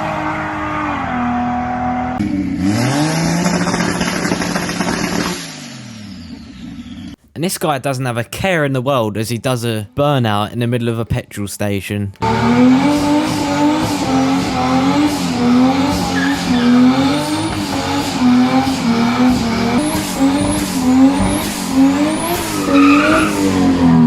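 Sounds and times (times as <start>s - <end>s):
car engine revving: 0.0s - 7.2s, 12.2s - 24.0s
tyres squealing: 13.8s - 23.6s.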